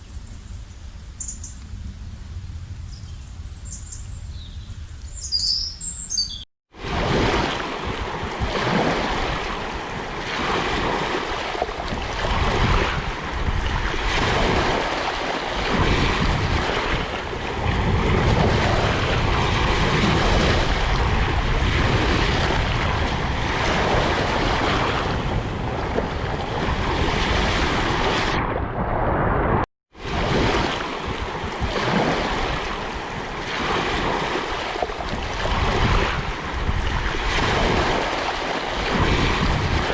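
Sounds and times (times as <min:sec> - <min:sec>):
high bird chirps: 0:01.2 - 0:01.6, 0:02.7 - 0:06.5
water rushing: 0:06.8 - 0:28.4, 0:30.0 - 0:39.9.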